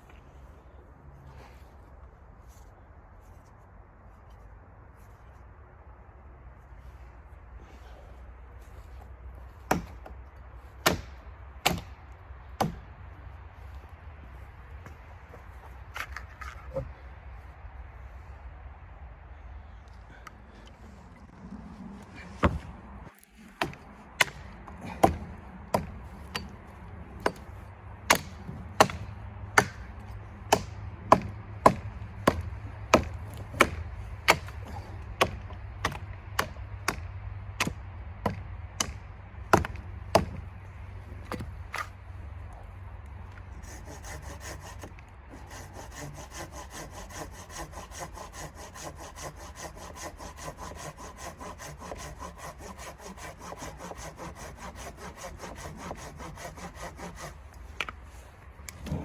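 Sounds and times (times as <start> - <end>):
axe chopping wood: 9.7 - 10.2, 10.8 - 12.0, 12.6 - 12.8, 22.3 - 40.5
hand saw cutting wood: 22.2 - 37.0, 43.4 - 59.0.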